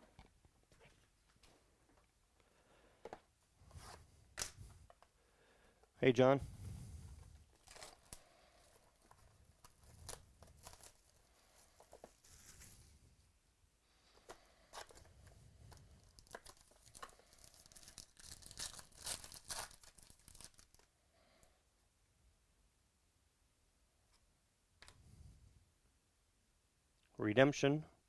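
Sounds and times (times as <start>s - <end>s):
rustling of cards: 6.5s - 13.0s, 14.0s - 20.9s
card packaging tearing and crinkling: 7.5s - 12.8s, 15.8s - 20.9s.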